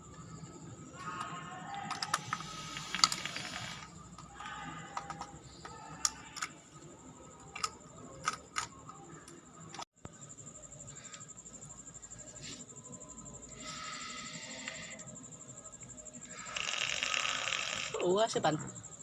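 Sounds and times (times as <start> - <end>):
sharp clicks and crackles: 1.0 - 6.6, 7.4 - 9.9
hissing crackling noise: 1.8 - 4.7.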